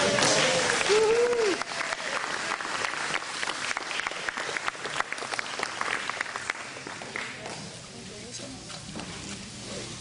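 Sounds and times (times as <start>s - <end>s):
group of people applauding: 0.0s - 7.5s.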